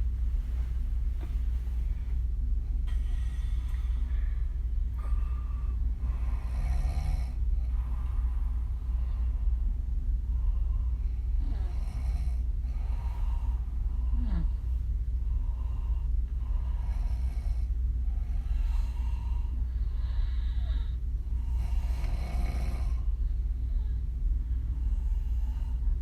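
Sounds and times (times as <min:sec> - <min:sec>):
steady low hum: 0:00.0 - 0:26.0
woman snoring: 0:06.1 - 0:07.4, 0:11.4 - 0:13.2, 0:14.0 - 0:14.7, 0:20.5 - 0:23.1.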